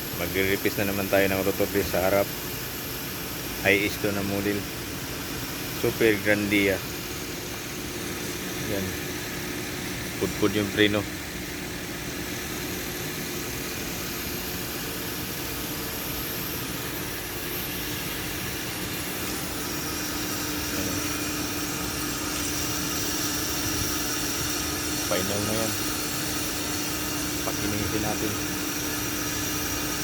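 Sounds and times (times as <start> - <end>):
brake lathe humming with high whine: 0.0 - 30.0.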